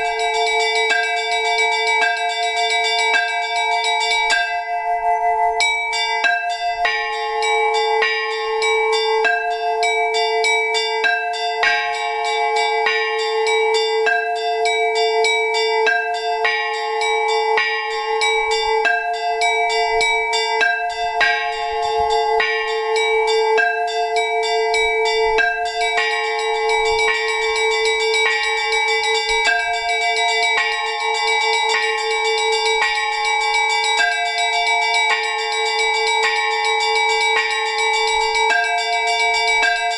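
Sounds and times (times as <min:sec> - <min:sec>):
large bell ringing: 0:00.0 - 0:04.7, 0:05.6 - 0:39.9
small bells ringing quickly: 0:06.2 - 0:39.9.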